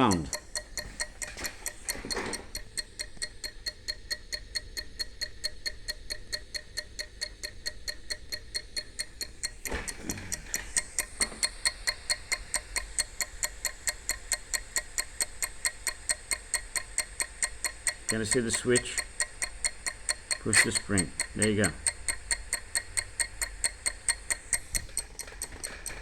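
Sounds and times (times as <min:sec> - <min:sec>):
clock ticking: 0:00.0 - 0:26.0
rustling knock: 0:09.5 - 0:11.5.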